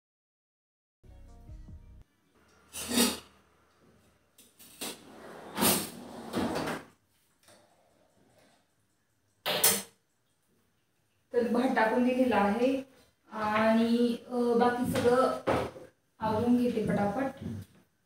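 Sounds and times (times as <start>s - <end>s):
drawer sliding: 4.6s - 6.9s.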